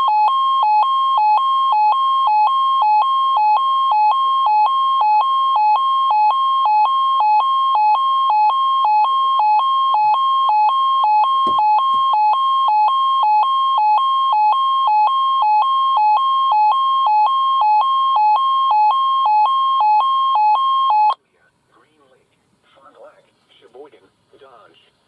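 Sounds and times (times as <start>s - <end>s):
two-tone radio alarm: 0.0s - 21.2s
low knock: 11.4s - 12.1s.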